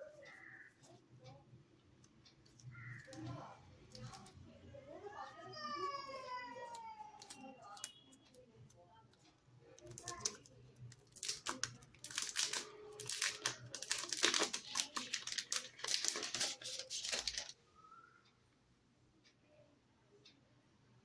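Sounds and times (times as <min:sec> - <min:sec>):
plastic packaging crinkling and tearing: 0:09.9 - 0:17.5.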